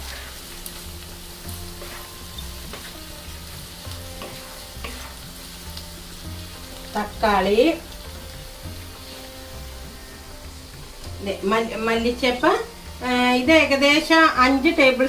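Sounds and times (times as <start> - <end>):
spatula stirring and tapping pan: 0.0 - 9.9
onion and tomato sizzling in a pan: 0.0 - 15.0.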